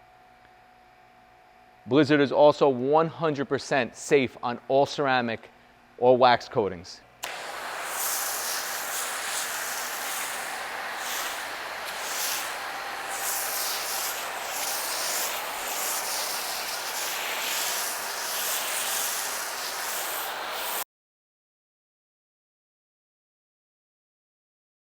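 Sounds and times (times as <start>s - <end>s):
pressure washer foam spray hiss: 7.2s - 20.8s.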